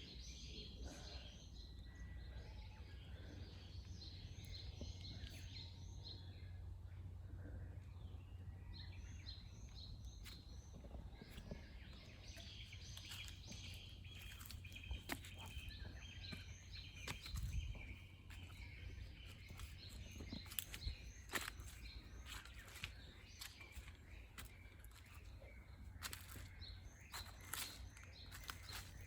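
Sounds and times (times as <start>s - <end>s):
small birds chirping: 0.0s - 29.0s
leaves and twigs crackling underfoot: 10.0s - 29.0s.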